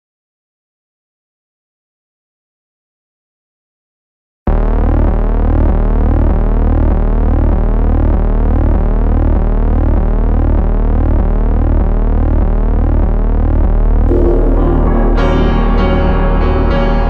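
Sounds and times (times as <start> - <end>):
pulsing synth bass: 4.5 - 17.0
synthesizer tone with pitch sweeps: 14.1 - 17.0.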